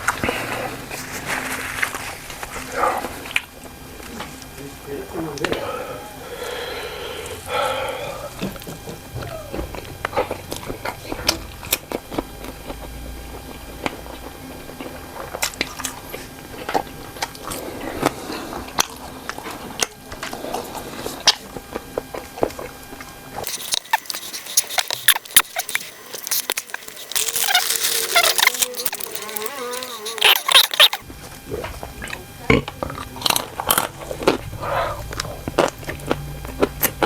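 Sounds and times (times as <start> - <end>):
biting and chewing food: 8.4 - 37.0.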